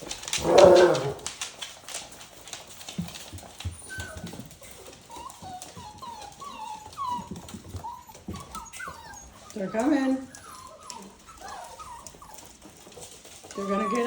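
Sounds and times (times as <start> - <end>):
puppy whimpering: 0.3 - 1.3, 3.2 - 14.0.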